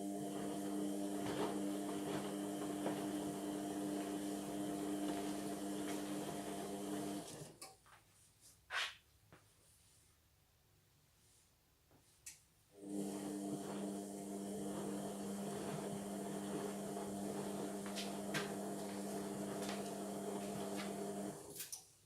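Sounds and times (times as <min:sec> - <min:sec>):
washing machine motor humming: 0:00.0 - 0:07.5, 0:12.8 - 0:21.5.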